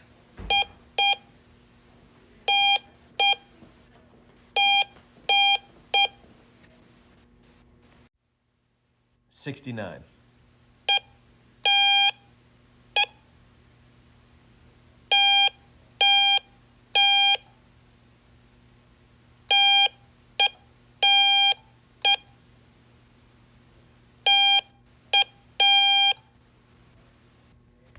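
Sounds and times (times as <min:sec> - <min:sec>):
morse code beeps: 0:00.4 - 0:01.2, 0:02.5 - 0:03.5, 0:04.6 - 0:06.2, 0:24.3 - 0:26.2.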